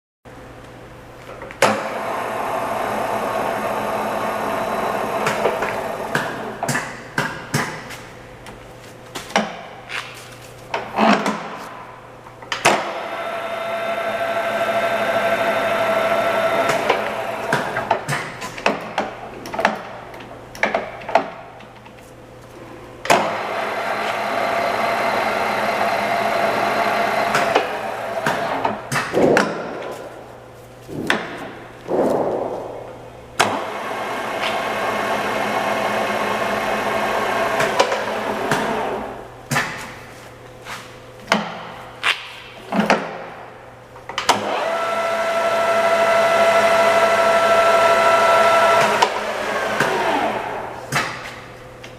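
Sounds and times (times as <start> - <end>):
lathe spindle running: 1.7 - 6.6, 12.9 - 18.0, 23.2 - 28.7, 33.4 - 39.1, 44.3 - 50.8.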